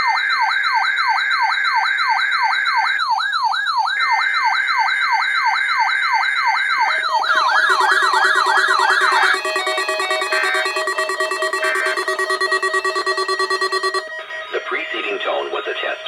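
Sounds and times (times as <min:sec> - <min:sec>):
electronic warble alarm: 0:06.9 - 0:14.3
steady alarm tones: 0:06.9 - 0:14.3.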